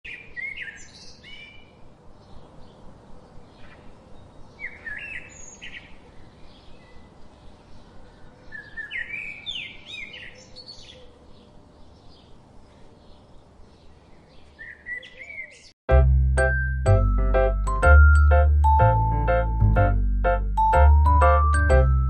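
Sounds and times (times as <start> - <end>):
songbirds chirping: 0.1 - 15.8.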